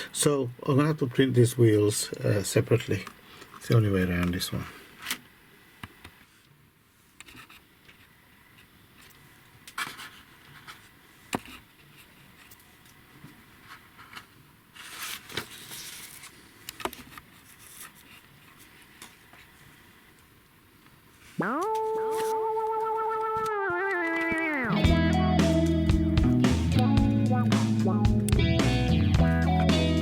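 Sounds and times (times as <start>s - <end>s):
scraping and rustling: 9.0s - 19.8s.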